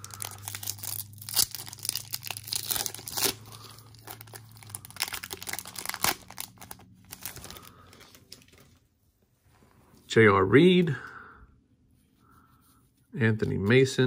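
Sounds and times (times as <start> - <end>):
foil wrapper crinkling: 0.0 - 8.8
low hum: 0.0 - 13.0.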